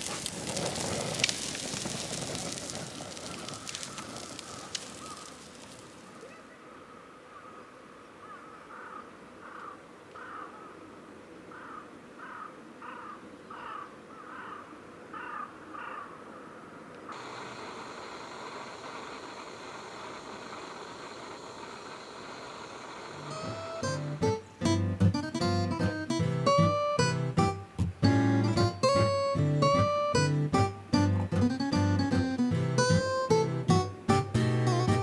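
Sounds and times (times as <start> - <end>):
outdoor background hiss: 0.0 - 35.0
crow cawing: 3.4 - 5.6, 8.2 - 10.8, 11.5 - 17.3.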